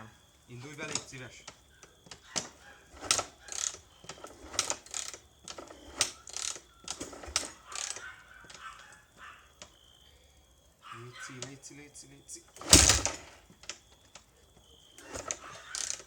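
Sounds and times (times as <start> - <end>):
engine cranking without firing: 0.0 - 9.8, 12.4 - 16.0.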